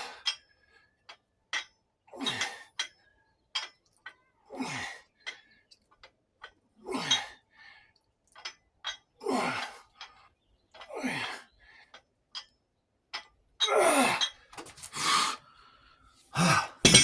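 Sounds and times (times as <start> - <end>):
man exhaling hard: 16.4 - 16.8.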